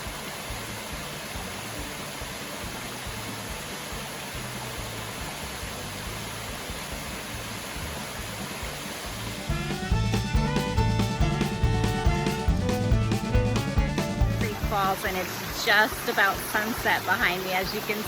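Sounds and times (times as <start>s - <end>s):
music with drums: 8.6s - 17.9s.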